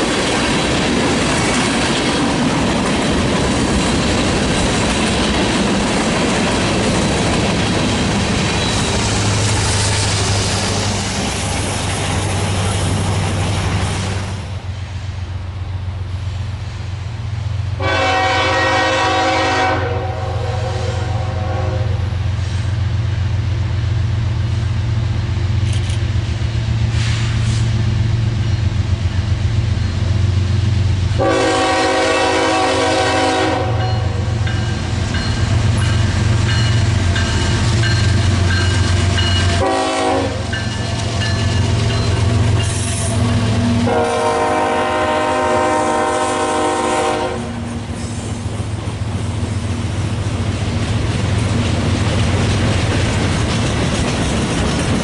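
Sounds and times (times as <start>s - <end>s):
low rumble of train: 0.0s - 55.0s
locomotive air horn blasts: 17.8s - 22.2s, 31.2s - 34.3s, 39.5s - 40.6s, 42.8s - 48.1s.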